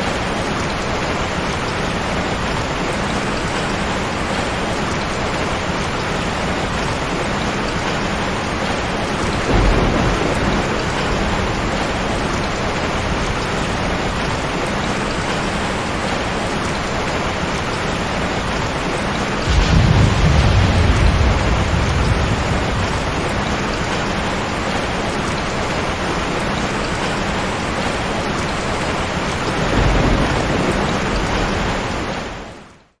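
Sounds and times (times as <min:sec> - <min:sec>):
heavy rain falling: 0:00.0 - 0:33.0
thunder rumbling: 0:06.4 - 0:17.1, 0:19.2 - 0:28.5, 0:29.1 - 0:32.5.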